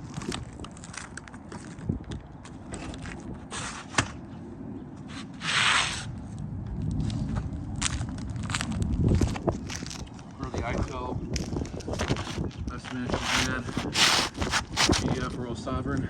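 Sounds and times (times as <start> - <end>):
shingles scraping and rubbing: 2.8 - 4.0, 5.1 - 6.2, 7.8 - 15.4
shingle tearing rasp: 11.4 - 15.4.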